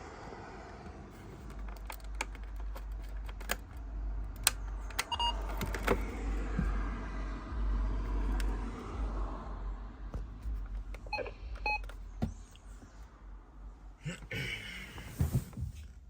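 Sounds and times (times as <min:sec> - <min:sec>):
steady low rumble: 0:00.0 - 0:16.0
handling clicks and knocks: 0:01.4 - 0:06.8.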